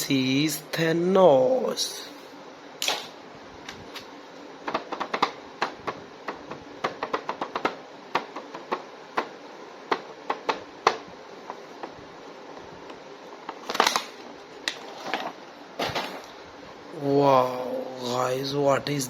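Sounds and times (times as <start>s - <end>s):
plastic toy clicks and taps: 4.7s - 9.3s, 9.9s - 11.0s.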